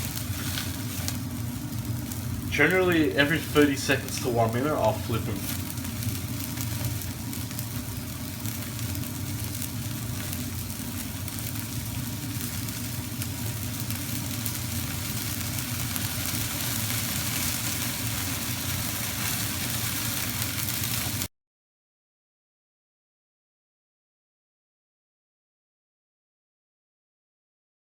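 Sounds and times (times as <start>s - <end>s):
gas burners rushing: 0.0s - 7.9s
meat sizzling on a grill: 0.0s - 21.3s.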